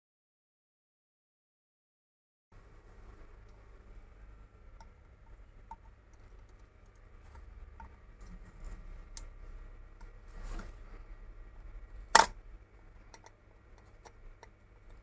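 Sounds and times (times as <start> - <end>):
short scraping: 10.2 - 11.0.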